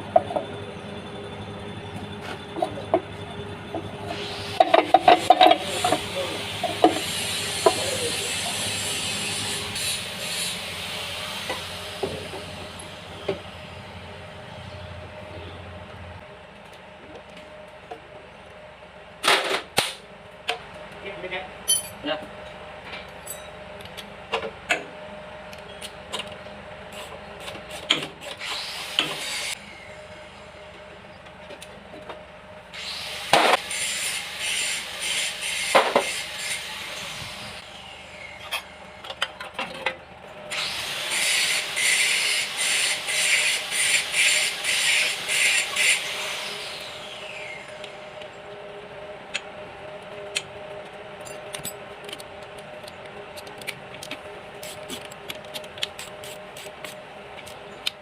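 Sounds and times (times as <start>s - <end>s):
hand tool rubbing on workpiece: 5.2s - 10.6s
tools clicking and tapping: 51.2s - 58.0s.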